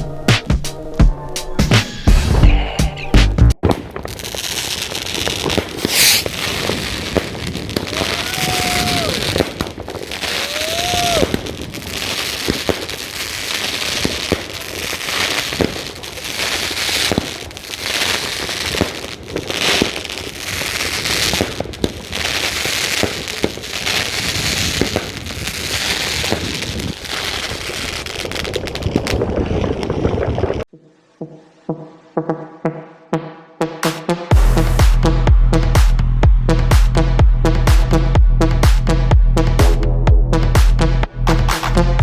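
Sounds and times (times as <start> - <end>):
firework battery shots and crackling: 3.6 - 30.7.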